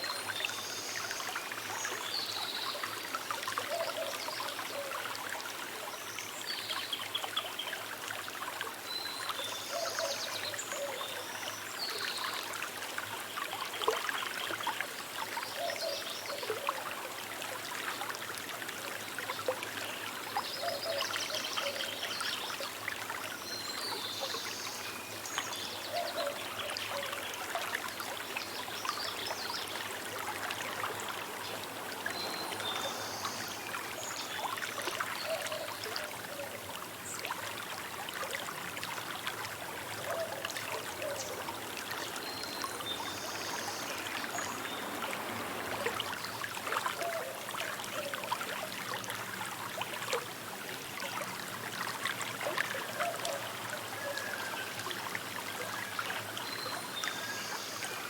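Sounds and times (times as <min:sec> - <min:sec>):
river babbling over stones: 0:11.6 - 0:58.0.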